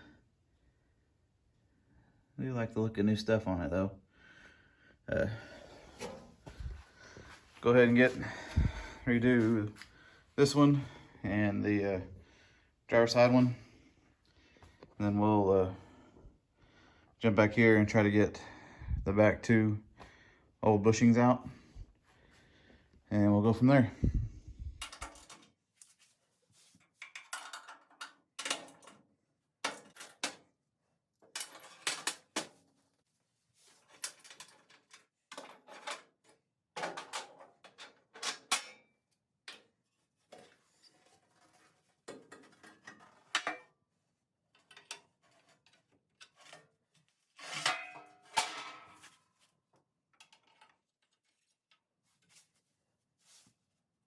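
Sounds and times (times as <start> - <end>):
metal bolts and tools clinking: 27.0 - 29.0.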